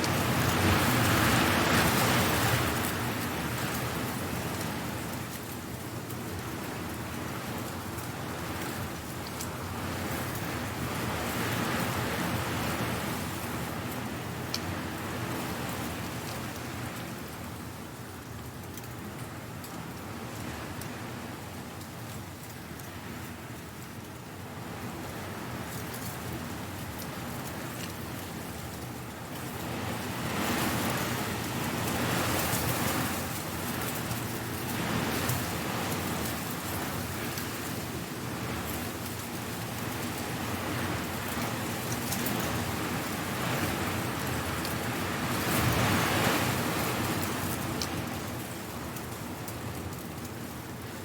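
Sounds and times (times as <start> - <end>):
wind blowing dry leaves: 0.0 - 51.0.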